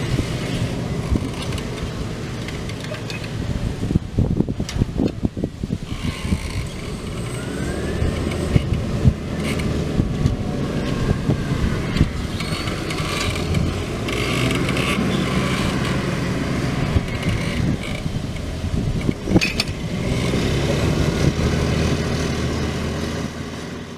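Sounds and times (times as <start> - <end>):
tractor diesel engine running: 0.0 - 23.9
knocks and rattles: 5.9 - 22.2.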